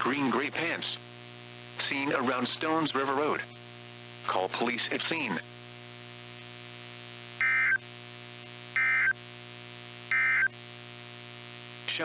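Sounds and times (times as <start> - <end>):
buzzy digital data bursts: 0.0 - 7.9, 8.7 - 9.2, 9.9 - 10.5
steady radio hum: 0.0 - 12.0.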